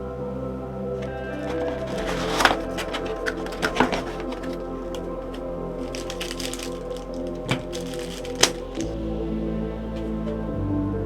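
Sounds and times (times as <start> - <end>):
background music with steady tones: 0.0 - 11.0
packaging clicks and knocks: 1.0 - 8.9.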